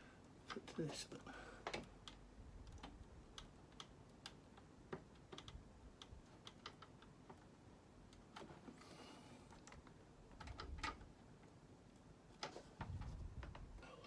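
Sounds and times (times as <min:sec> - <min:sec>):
plastic connectors clicking: 0:01.6 - 0:07.4.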